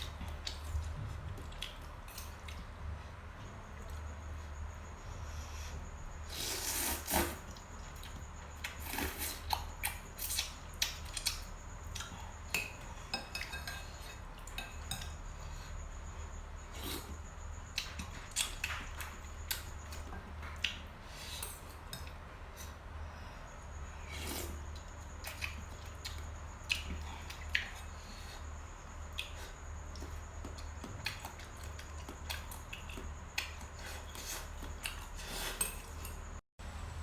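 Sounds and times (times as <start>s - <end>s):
cutlery clinking against a plate: 12.5s - 15.2s, 31.1s - 36.3s.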